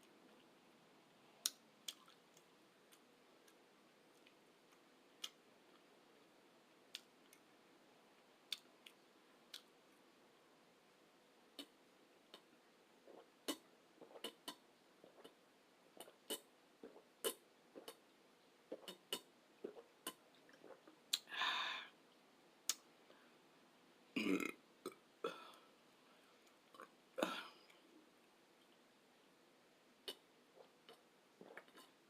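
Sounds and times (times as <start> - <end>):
chewing clicks and smacks: 1.4 - 3.6
person burping: 24.2 - 25.5, 27.2 - 27.6.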